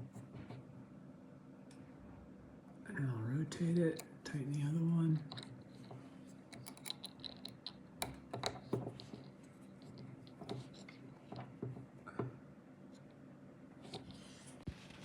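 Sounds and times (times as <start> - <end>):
hex key clicking and scraping on metal: 5.2 - 11.1.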